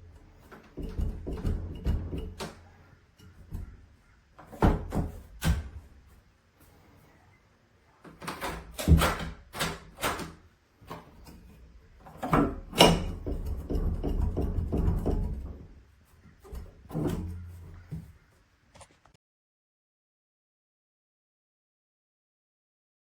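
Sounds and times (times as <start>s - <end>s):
door knocking against metal latch: 0.7s - 2.6s, 12.3s - 15.7s.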